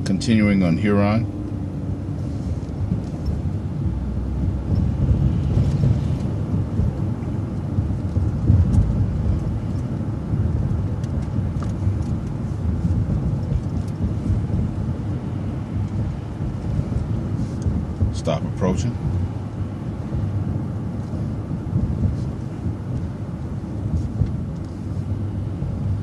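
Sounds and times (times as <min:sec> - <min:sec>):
bus engine and road rumble: 0:00.0 - 0:26.0.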